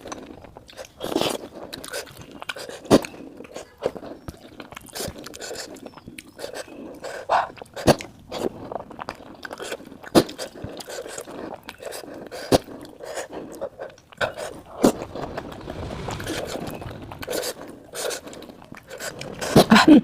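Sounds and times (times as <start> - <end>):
chewing and slurping: 0.0 - 19.8.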